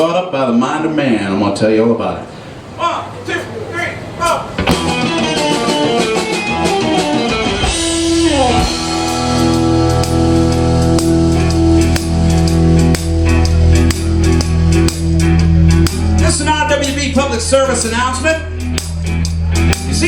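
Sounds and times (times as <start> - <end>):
blues band playing: 2.2 - 20.0
steady drum beat: 4.2 - 17.0
electric guitar run: 4.6 - 16.2.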